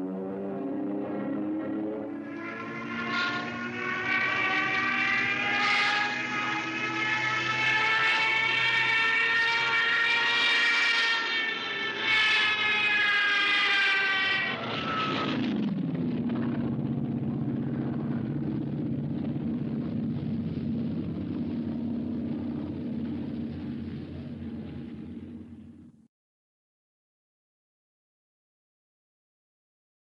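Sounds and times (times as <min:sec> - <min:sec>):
propeller airplane engine drone: 0:00.0 - 0:26.1.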